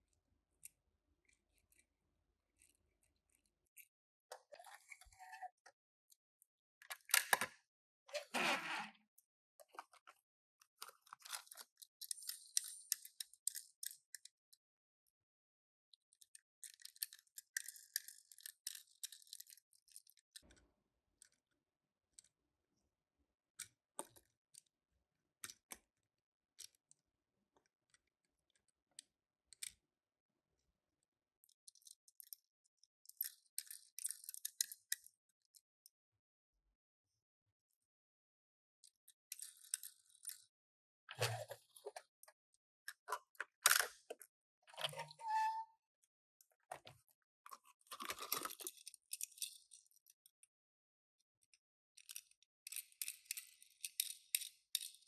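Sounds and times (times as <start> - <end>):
small clicks and taps: 31.4 - 35.6.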